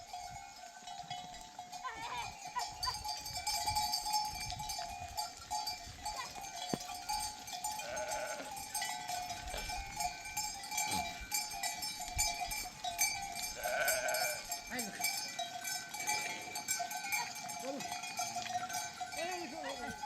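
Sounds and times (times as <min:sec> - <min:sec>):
sheep bells clinking: 0:00.0 - 0:20.0
sheep bleating: 0:07.7 - 0:08.8, 0:09.4 - 0:10.0, 0:13.4 - 0:15.0, 0:16.0 - 0:17.5.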